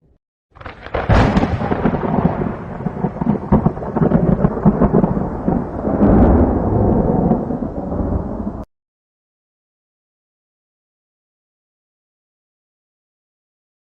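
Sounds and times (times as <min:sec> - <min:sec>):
thunder rumbling: 0:00.6 - 0:08.7.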